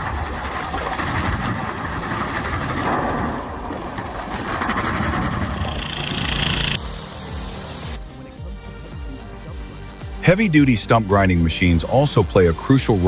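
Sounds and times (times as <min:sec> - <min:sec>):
heavy machinery engine running: 0:00.0 - 0:08.2.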